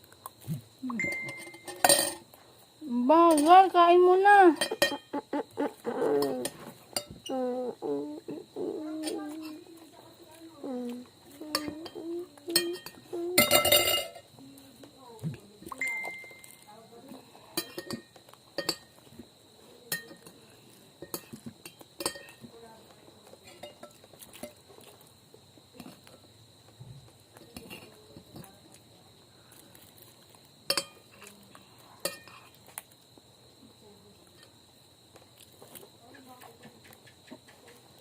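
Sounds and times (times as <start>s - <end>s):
faint high tone: 0.8s - 1.8s, 15.7s - 16.7s
utensils clinking on a plate: 1.0s - 2.3s, 4.5s - 5.2s, 11.4s - 14.3s, 17.4s - 19.0s, 19.9s - 20.4s, 21.0s - 22.5s, 23.4s - 24.6s, 30.7s - 31.4s, 32.0s - 32.6s.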